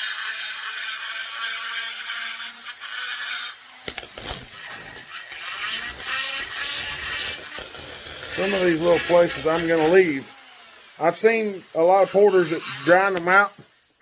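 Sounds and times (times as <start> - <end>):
rotary grinder whining: 3.7 - 13.6
scraping and handling noises: 3.9 - 9.4.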